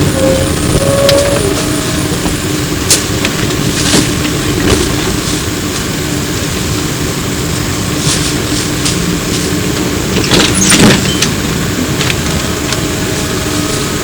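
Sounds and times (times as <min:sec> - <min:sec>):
road and body rumble: 0:00.0 - 0:14.0
sharp rattles and clicks: 0:08.0 - 0:12.9.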